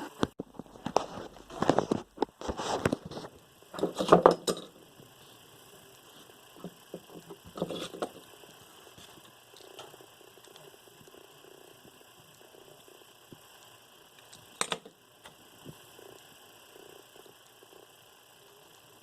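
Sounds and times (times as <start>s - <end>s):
small parts clicking and rustling: 0.6s - 4.8s, 6.5s - 8.3s, 14.2s - 15.8s.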